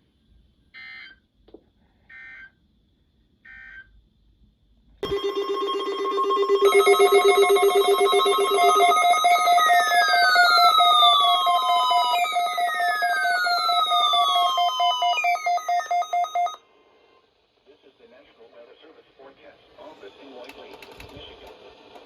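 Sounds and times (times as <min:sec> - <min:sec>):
emergency alert data bursts: 0:05.0 - 0:16.6
loud electronic ringing tones: 0:05.0 - 0:16.6.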